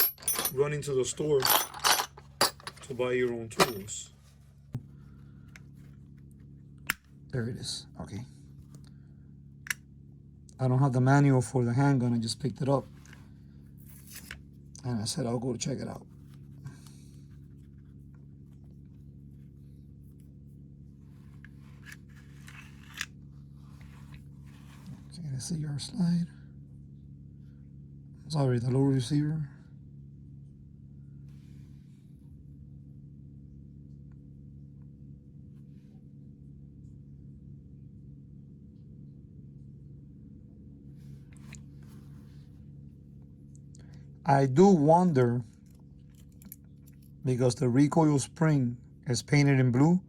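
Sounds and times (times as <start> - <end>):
small metal parts clicking: 0.0 - 0.6, 1.4 - 2.9
low electrical hum: 0.0 - 50.0.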